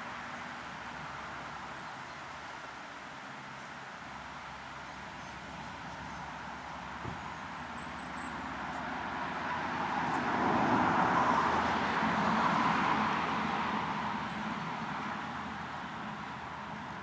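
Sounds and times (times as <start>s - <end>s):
vehicle passing by: 8.4s - 15.4s.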